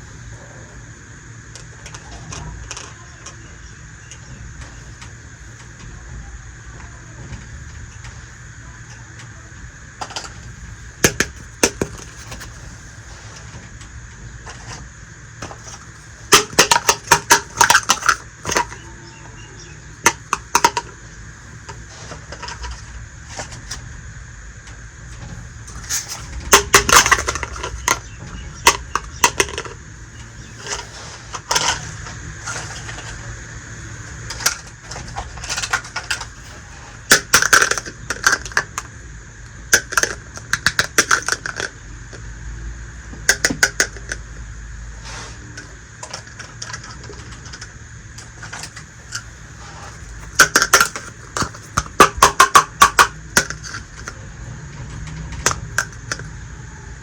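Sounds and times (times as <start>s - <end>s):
toy kitchenware clicking and clinking: 1.5s - 4.3s, 8.7s - 12.6s, 15.4s - 21.0s, 21.7s - 23.6s, 25.7s - 29.8s, 30.4s - 33.2s, 34.3s - 38.9s, 39.7s - 42.2s, 43.2s - 44.4s, 45.6s - 54.2s, 55.0s - 56.4s.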